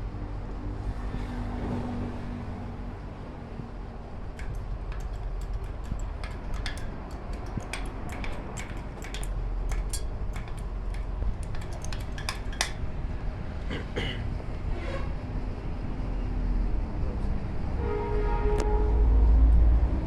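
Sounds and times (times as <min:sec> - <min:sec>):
light metallic clinks: 0:04.3 - 0:13.0.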